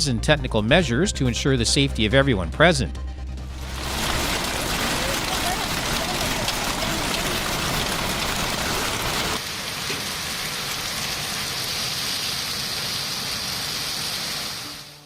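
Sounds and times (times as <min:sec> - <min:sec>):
rain hissing: 0:03.5 - 0:15.0.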